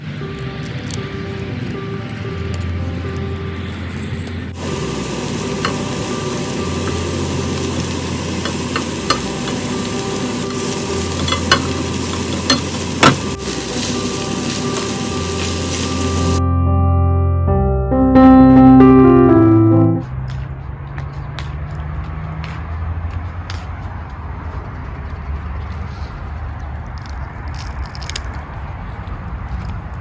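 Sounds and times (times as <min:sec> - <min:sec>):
soft music: 0:00.0 - 0:20.2
food sizzling in a pan: 0:04.6 - 0:16.4.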